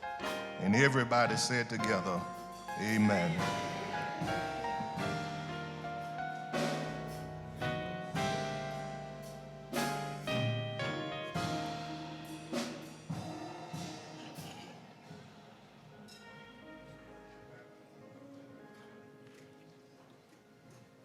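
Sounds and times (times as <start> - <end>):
instrumental music with struck chords: 0.0 - 15.5.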